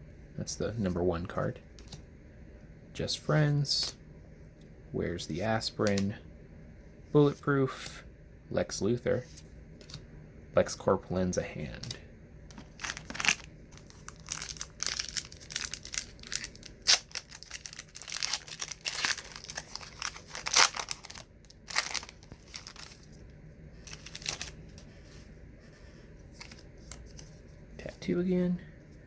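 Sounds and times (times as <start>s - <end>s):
cards rustling: 5.5s - 6.2s, 11.7s - 28.2s
wrapper crinkling and tearing: 12.6s - 23.2s, 23.8s - 24.8s.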